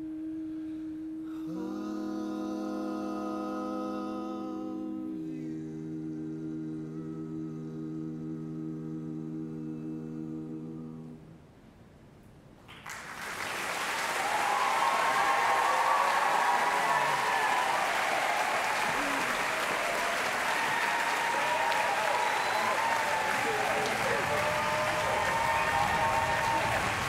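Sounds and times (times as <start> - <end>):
vocal quartet holding chord: 0.0 - 11.4
audience applause: 12.7 - 27.0.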